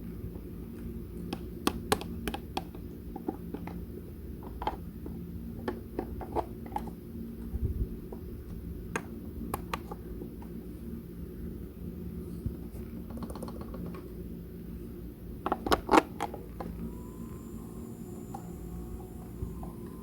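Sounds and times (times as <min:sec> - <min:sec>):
low hum: 0:16.4 - 0:20.0.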